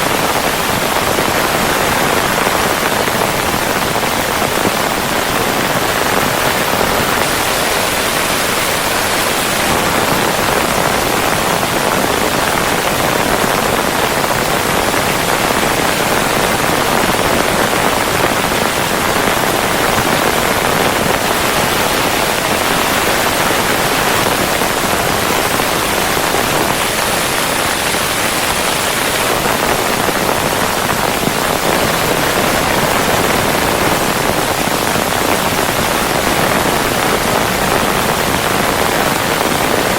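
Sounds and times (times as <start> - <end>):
falling water hiss: 4.6 - 19.1, 19.9 - 32.5.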